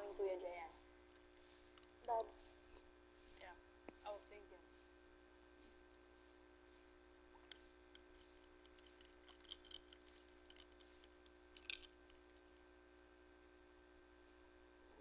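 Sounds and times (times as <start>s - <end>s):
faint steady hum: 0.0s - 15.0s
light clicks and clinks: 7.5s - 12.6s.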